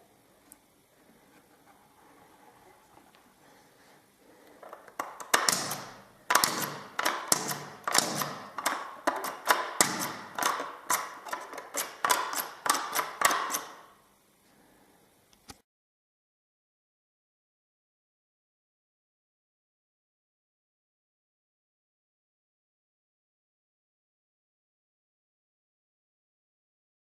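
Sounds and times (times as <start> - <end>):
sharp clicks and knocks: 4.6 - 13.8.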